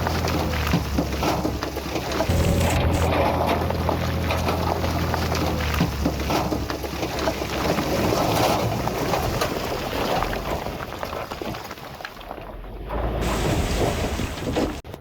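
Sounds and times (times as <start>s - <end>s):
low engine hum: 0.0s - 11.0s
dirt and stones crunching: 0.0s - 15.0s.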